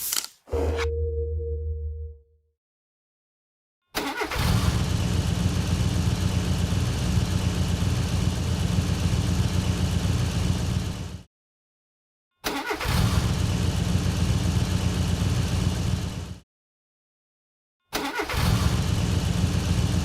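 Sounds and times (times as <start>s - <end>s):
car engine cranking: 4.0s - 4.4s
car engine running: 4.8s - 11.2s.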